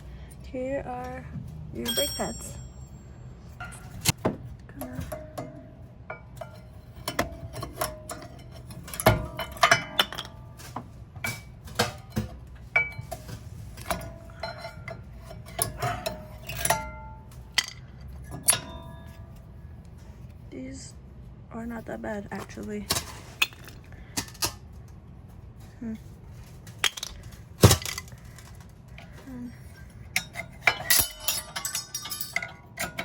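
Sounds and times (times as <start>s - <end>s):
metal clinks and rattles: 0.9s - 20.4s, 26.0s - 33.0s.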